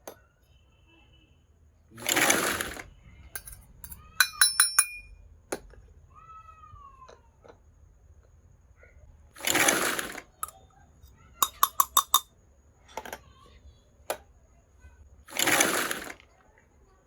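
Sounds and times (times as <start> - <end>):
toy kitchenware clinking: 2.0 - 5.7, 9.4 - 12.3, 15.3 - 16.2.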